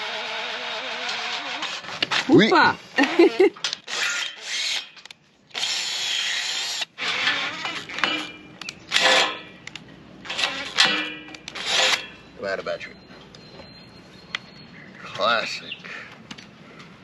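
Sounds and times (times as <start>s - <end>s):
cordless drill boring: 3.9s - 4.9s, 5.5s - 8.0s.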